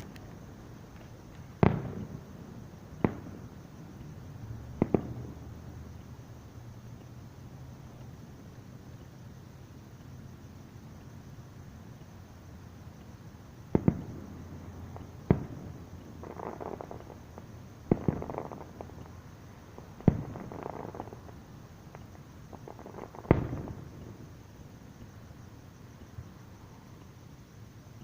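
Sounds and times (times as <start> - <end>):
soft firework crackling: 0.0 - 6.2, 6.8 - 27.4
distant firework booms: 1.5 - 2.4, 3.0 - 3.6, 4.7 - 5.5, 13.7 - 19.1, 19.7 - 24.4.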